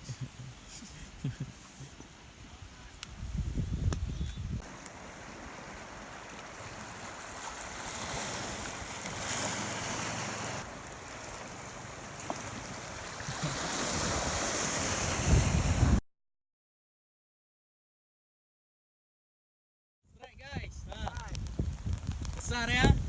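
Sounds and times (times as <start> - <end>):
wind buffeting microphone: 2.4 - 16.0, 20.4 - 23.0
sea waves breaking: 4.6 - 16.0.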